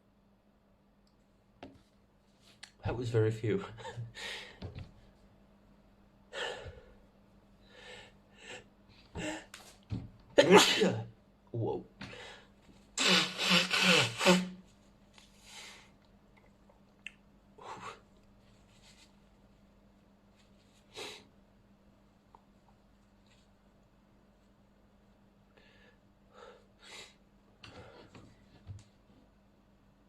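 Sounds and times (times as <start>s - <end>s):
faint steady hum: 0.0s - 30.0s
person sneezing: 10.4s - 11.1s, 13.0s - 14.6s.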